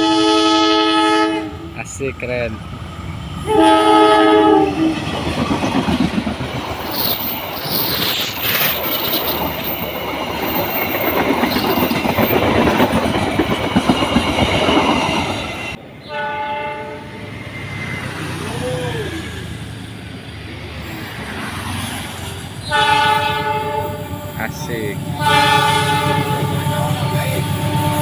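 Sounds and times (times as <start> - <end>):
diesel locomotive horn: 0.0 - 2.0, 3.4 - 5.1, 16.0 - 17.4, 22.6 - 28.0
train wheels rumbling and clattering: 1.8 - 15.8, 19.1 - 28.0.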